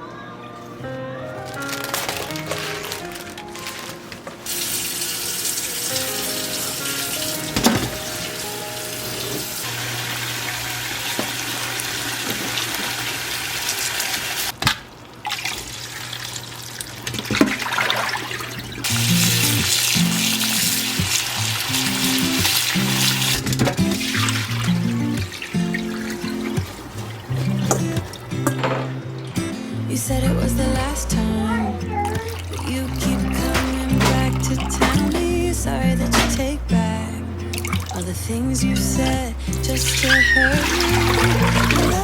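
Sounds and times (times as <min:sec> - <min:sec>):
soft background music: 0:00.0 - 0:09.8, 0:18.9 - 0:42.0
tap water running into sink: 0:10.3 - 0:29.5, 0:39.2 - 0:42.0.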